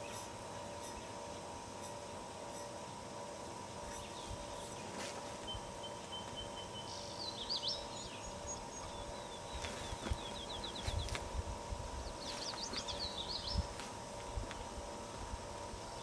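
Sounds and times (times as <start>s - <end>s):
rural background noise: 0.0s - 16.0s
songbird singing warbling phrases: 5.5s - 11.1s.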